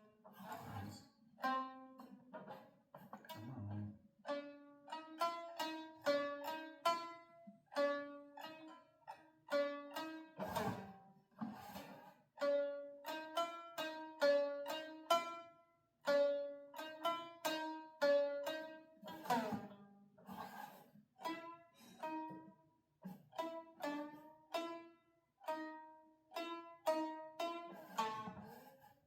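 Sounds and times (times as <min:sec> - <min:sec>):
plucked string instrument notes: 0:00.0 - 0:28.9.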